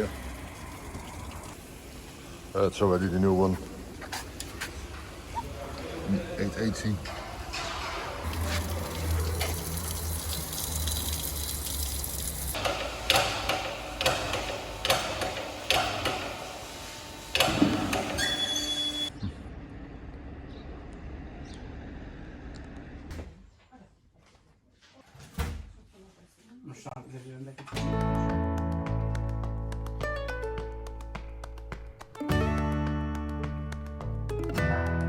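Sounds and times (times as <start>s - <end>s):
sharp metallic knocks: 12.6s - 16.4s.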